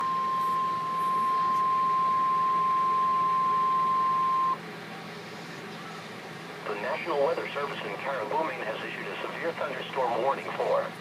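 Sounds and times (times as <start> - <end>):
high-pitched alarm tone: 0.0 - 4.6
radio hiss: 6.6 - 11.0.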